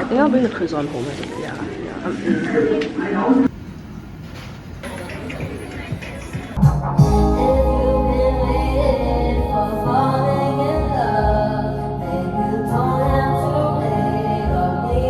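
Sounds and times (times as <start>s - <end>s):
sung melody: 5.2s - 15.0s
steady bass line: 6.6s - 15.0s.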